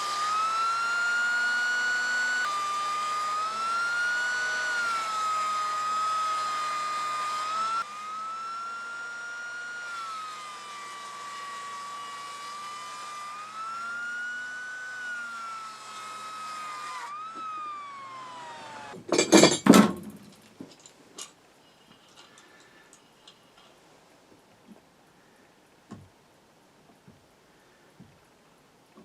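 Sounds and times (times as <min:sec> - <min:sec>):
power tool motor whining: 0:00.0 - 0:19.6
loud short clatter: 0:19.0 - 0:20.8.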